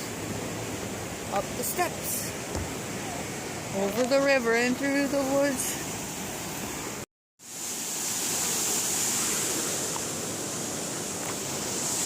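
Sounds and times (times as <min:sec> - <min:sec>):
waterfall rushing: 0:04.7 - 0:12.0.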